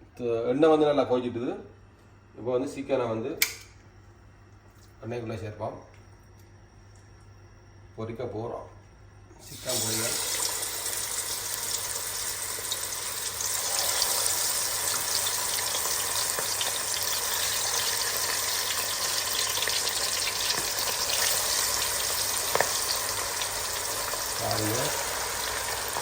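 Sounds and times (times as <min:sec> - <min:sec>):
chicken deep-frying in oil: 0:09.4 - 0:26.0.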